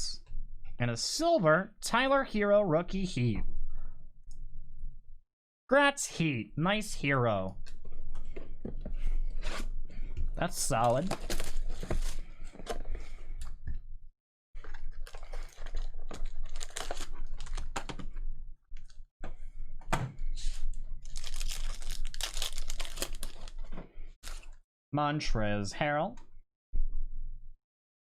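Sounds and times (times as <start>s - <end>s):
card packs being torn open: 14.7s - 17.9s, 21.0s - 23.6s, 24.2s - 24.5s.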